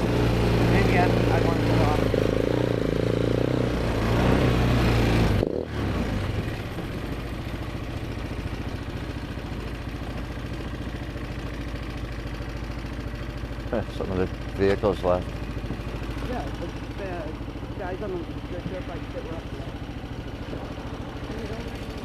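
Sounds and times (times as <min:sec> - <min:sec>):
atv engine running: 0:00.0 - 0:22.0.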